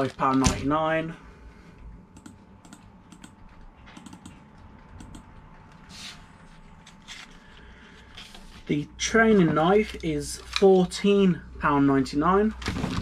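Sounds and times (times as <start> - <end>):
key clicks: 2.2 - 4.4.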